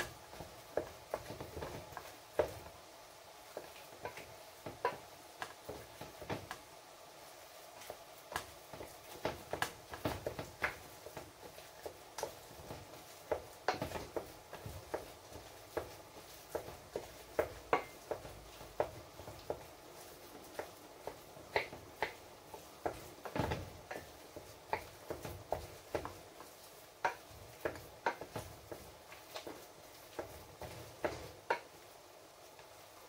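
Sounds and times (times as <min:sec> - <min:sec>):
utensil knocking on cookware: 0:11.6 - 0:31.8.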